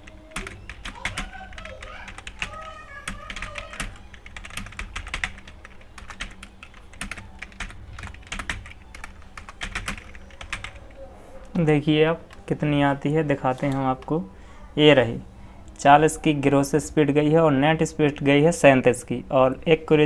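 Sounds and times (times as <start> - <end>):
keyboard typing: 0.0 - 12.5.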